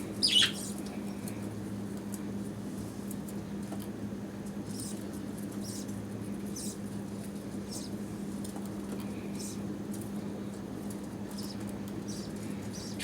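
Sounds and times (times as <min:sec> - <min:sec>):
low electrical hum: 0:00.0 - 0:13.0
budgerigars chirping: 0:00.2 - 0:00.6.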